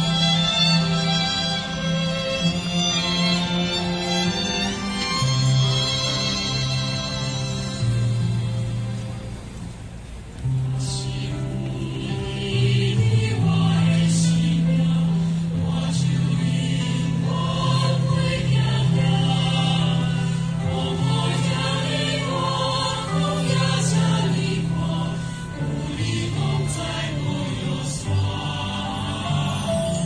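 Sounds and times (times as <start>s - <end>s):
instrumental accompaniment: 0.0s - 30.0s
choir singing: 10.7s - 30.0s.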